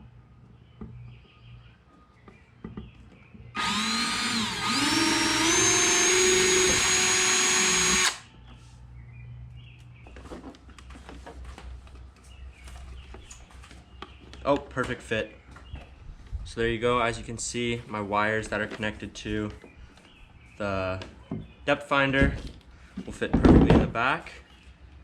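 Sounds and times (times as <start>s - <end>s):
power drill whining: 3.6s - 8.3s.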